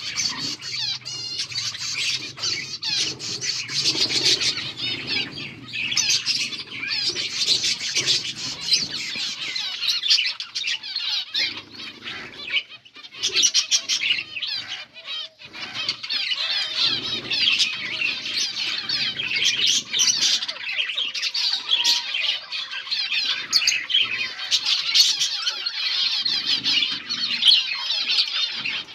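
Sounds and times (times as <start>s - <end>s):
wings fluttering: 0.0s - 9.8s
finches chirping: 0.0s - 28.9s.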